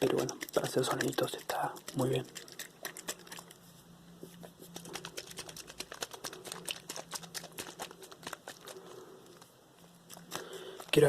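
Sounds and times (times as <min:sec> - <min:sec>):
fingertips tapping on plastic: 0:00.0 - 0:03.3.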